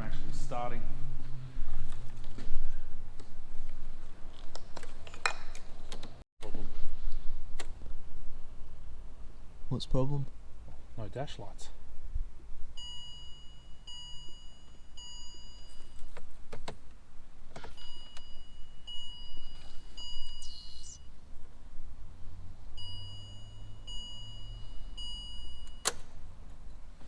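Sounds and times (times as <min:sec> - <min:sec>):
car warning chime beeps: 0:12.8 - 0:16.0, 0:17.7 - 0:21.0, 0:22.8 - 0:26.0.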